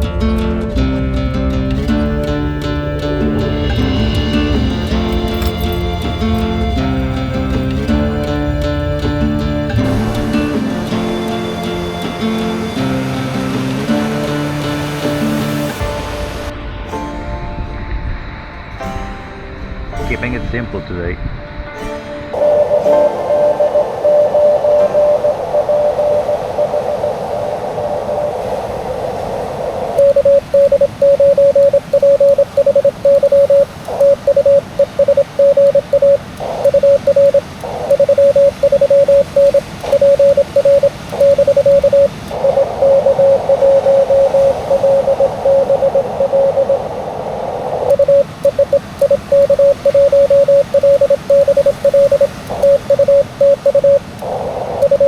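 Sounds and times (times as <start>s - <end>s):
radio receiver hiss: 1.7s - 16.6s, 22.4s - 55.0s
morse code beeps: 1.8s - 15.8s, 22.4s - 27.3s, 30.0s - 46.9s, 47.8s - 55.0s.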